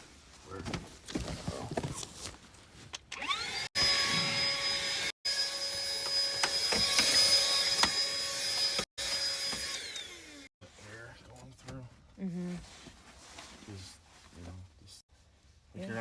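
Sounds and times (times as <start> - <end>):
vacuum cleaner motor whine: 3.2 - 10.5.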